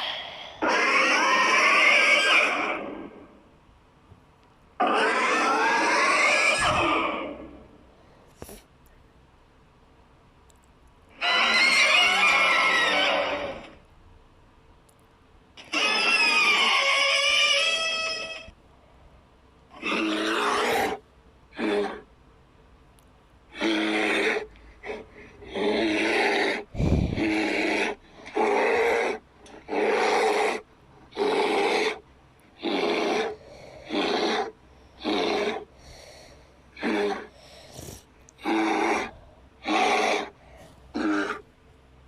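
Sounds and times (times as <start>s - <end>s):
creature grunts and snorts: 19.8s - 21.0s, 23.6s - 30.4s.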